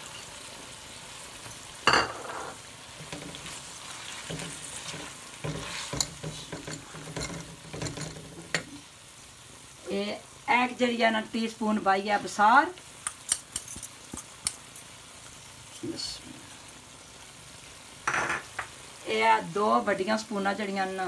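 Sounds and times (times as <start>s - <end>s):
masala sizzling in hot oil: 0.0s - 21.0s
spoon stirring and scraping pan: 1.3s - 8.9s, 12.8s - 15.0s.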